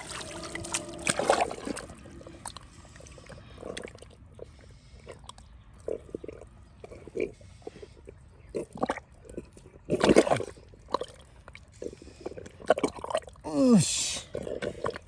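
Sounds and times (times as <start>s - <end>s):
mud squelching and splashing: 0.0s - 4.4s.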